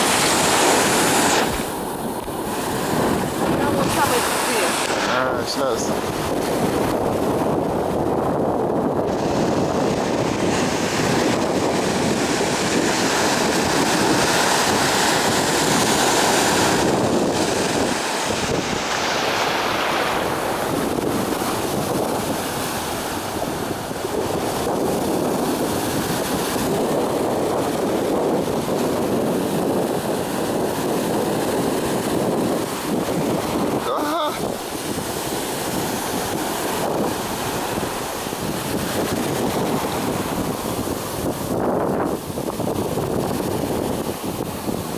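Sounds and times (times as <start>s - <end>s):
surf breaking and washing ashore: 0.0s - 44.9s
wind buffeting microphone: 0.0s - 44.9s.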